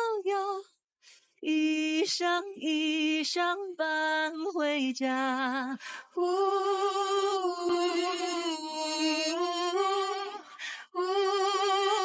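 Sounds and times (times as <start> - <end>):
singer breathing: 10.4 - 10.9.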